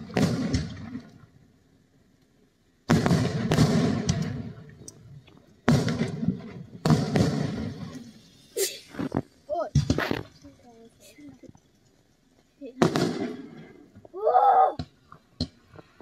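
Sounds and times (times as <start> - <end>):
fireworks booming and crackling: 0.0 - 1.2, 2.8 - 11.6, 12.6 - 14.1.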